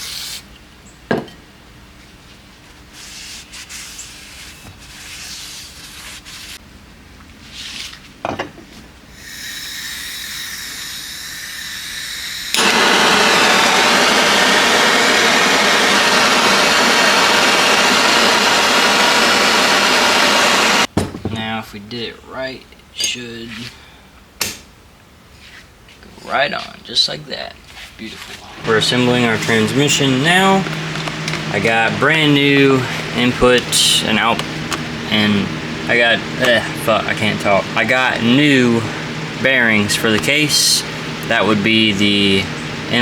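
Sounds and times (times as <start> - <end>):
spraying hiss: 0.0 - 0.5, 9.1 - 20.9
scrubbing and rubbing parts: 2.6 - 6.6, 27.8 - 41.5
rush of blown air: 9.1 - 20.9.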